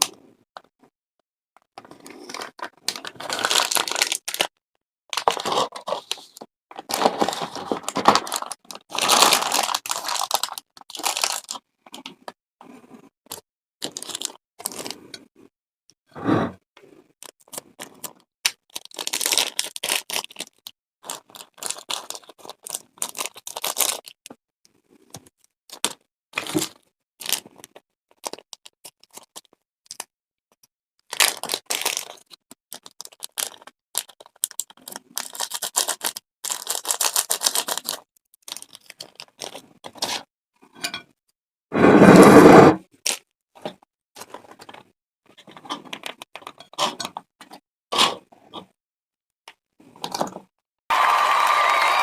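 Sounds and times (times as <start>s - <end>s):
plastic packaging crinkling: 1.8s - 4.5s, 5.1s - 11.6s, 13.8s - 15.0s, 17.3s - 24.2s, 25.7s - 30.0s, 31.1s - 40.2s.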